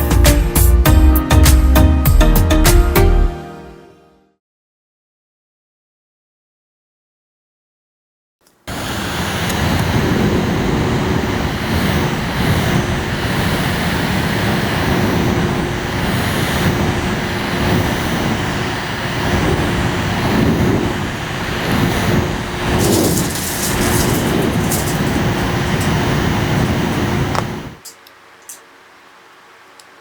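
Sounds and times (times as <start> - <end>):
fan rushing air: 8.5 - 30.0
constant low hum: 10.5 - 30.0.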